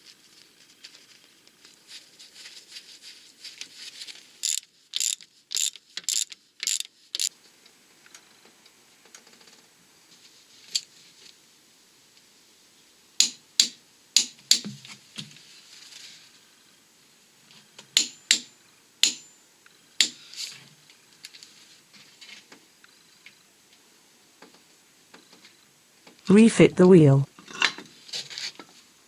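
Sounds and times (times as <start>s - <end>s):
metallic clicks of hand tools: 4.4s - 7.3s, 18.0s - 19.3s.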